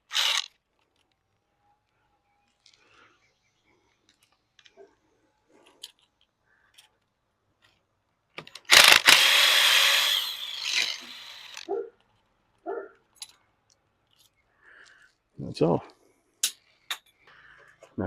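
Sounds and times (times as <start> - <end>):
cordless screw gun running: 0.0 - 0.5, 8.7 - 11.7.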